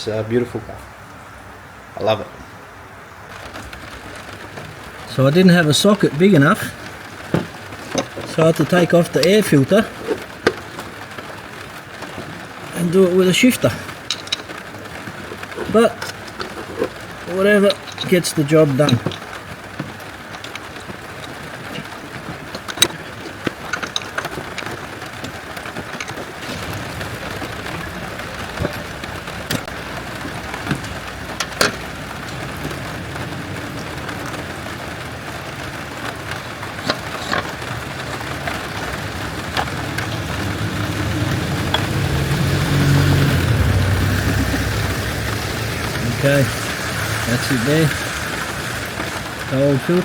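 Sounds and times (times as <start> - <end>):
light rain falling: 0.0 - 50.0
low engine rumble: 24.6 - 49.8.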